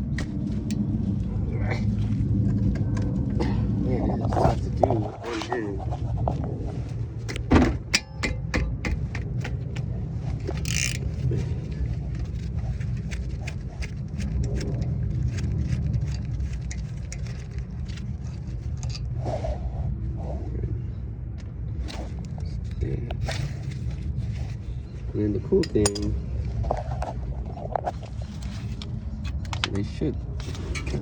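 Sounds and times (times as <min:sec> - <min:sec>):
steady low rumble: 0:00.0 - 0:31.0
ratchet clicks: 0:10.5 - 0:11.0
metal tools clinking: 0:10.5 - 0:11.4, 0:25.6 - 0:26.2.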